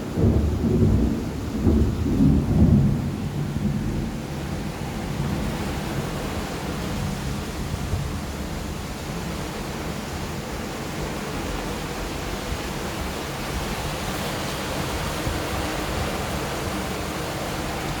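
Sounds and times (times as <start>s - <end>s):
low thunder rumble: 0.0s - 5.6s.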